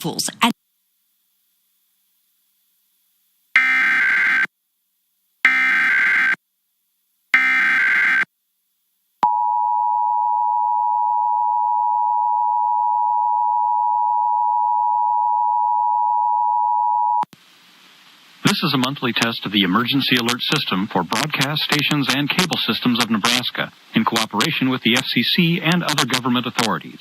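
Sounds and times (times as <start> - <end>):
digital data bursts: 18.5 - 26.8.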